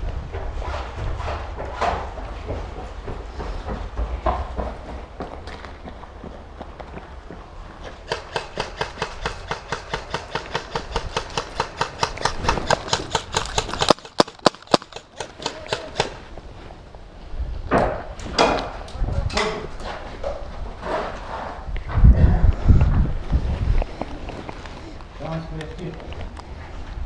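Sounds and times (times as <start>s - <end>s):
running footsteps: 0.4s - 16.5s.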